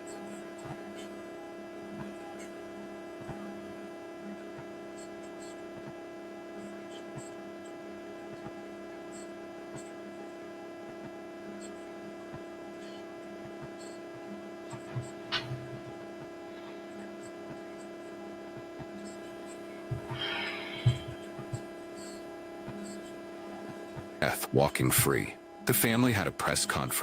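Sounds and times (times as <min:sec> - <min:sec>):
electrical mains hum: 0:00.0 - 0:27.0.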